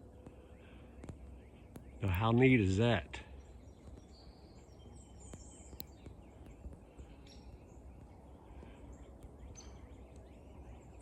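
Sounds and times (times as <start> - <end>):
faint songbirds chirping: 0.0 - 11.0
low rumble of wind: 0.0 - 11.0.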